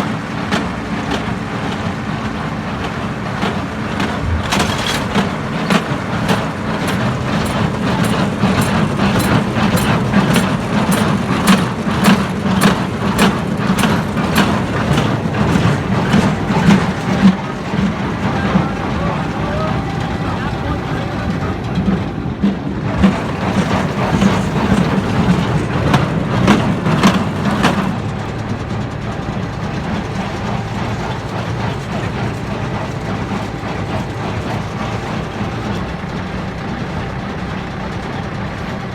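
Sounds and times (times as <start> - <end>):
tractor engine hum: 0.0 - 38.9.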